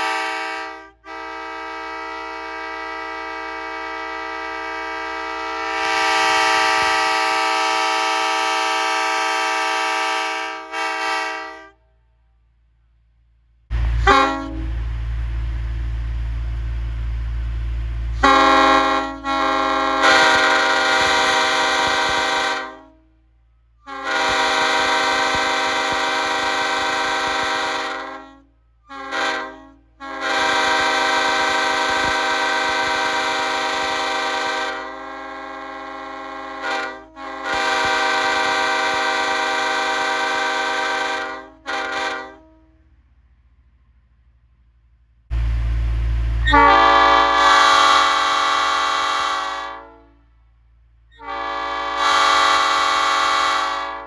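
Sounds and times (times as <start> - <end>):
short horn toots: 0.0 - 11.8, 13.7 - 14.9, 18.2 - 23.1, 23.8 - 42.8, 45.4 - 50.3, 51.1 - 54.0
train air horn blasts: 0.0 - 11.9, 13.7 - 15.0, 18.1 - 42.9, 45.3 - 50.5, 51.1 - 54.0
low rumble: 13.7 - 18.4, 45.3 - 47.3.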